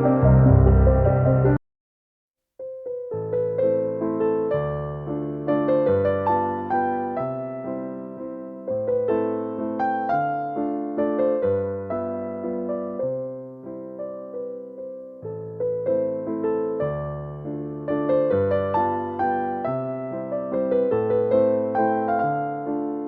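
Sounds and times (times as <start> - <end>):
electric piano melody: 0.0 - 1.6, 2.6 - 23.0.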